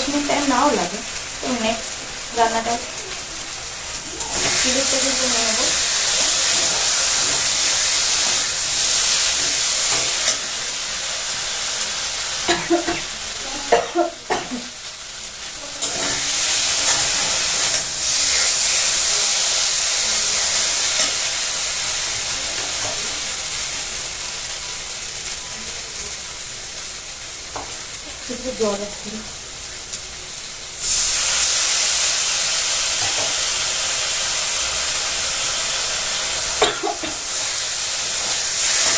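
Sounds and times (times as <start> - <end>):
spices sizzling in hot oil: 0.0 - 38.9
spoon knocking and scraping pan: 9.4 - 10.5, 27.5 - 27.8, 33.0 - 33.4.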